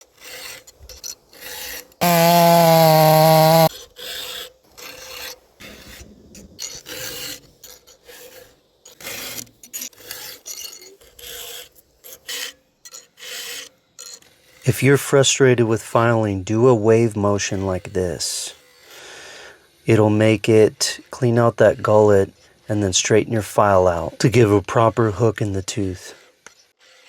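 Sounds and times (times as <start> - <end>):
file rasping on chainsaw chain: 0.0 - 6.0, 6.6 - 27.0
loud steady buzzing tone: 2.0 - 3.7.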